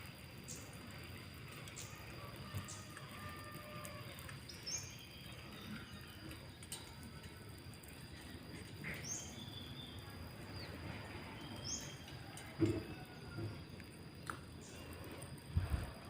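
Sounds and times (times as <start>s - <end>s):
faint high bird chirps: 4.2s - 7.3s.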